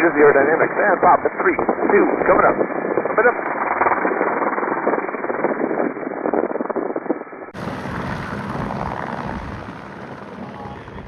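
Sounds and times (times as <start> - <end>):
helicopter rotor and engine noise: 7.5 - 11.0.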